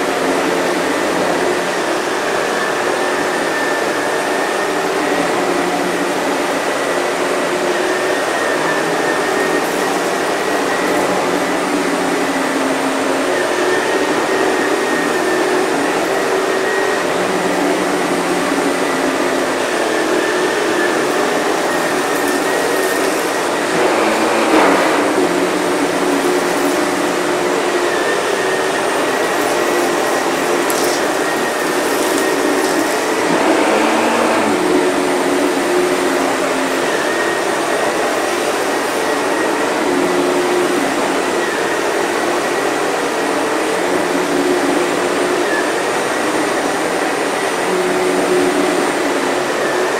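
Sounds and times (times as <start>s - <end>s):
vacuum cleaner whining: 0.0s - 49.9s.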